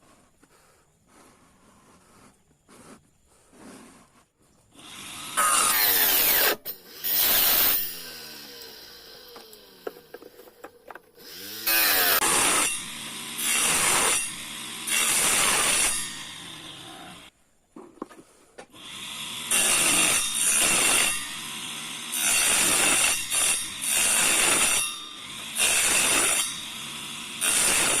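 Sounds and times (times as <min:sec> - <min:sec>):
saw blade cutting wood: 0:04.7 - 0:17.3, 0:18.6 - 0:28.0
small motor whining: 0:04.7 - 0:17.3.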